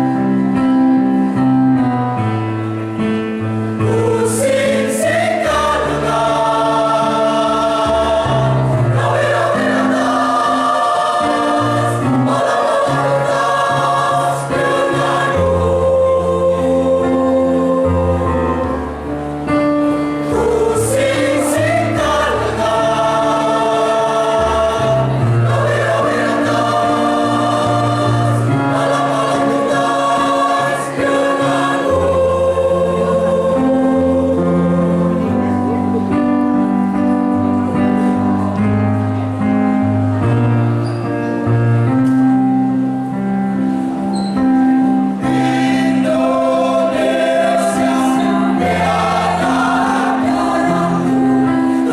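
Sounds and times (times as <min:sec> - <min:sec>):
instrumental accompaniment: 0:00.0 - 0:51.9
choir singing: 0:03.4 - 0:36.3, 0:43.7 - 0:51.9.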